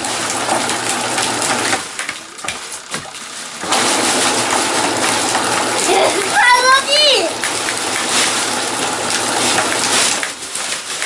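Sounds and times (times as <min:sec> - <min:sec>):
water rushing and splashing: 0:00.0 - 0:11.0.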